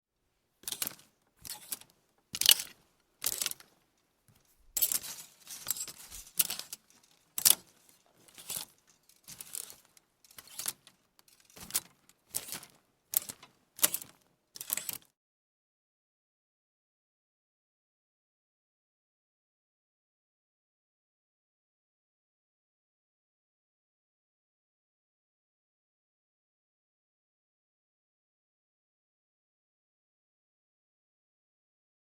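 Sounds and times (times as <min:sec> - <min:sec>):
clothes hangers clattering: 0:00.6 - 0:15.1.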